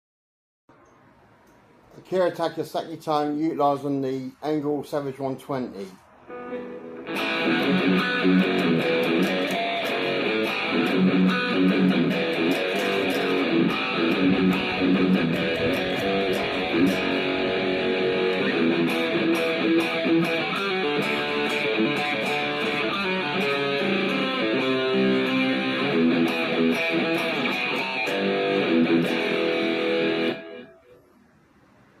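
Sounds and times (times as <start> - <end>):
electric guitar riffs and chords: 6.3 - 30.9.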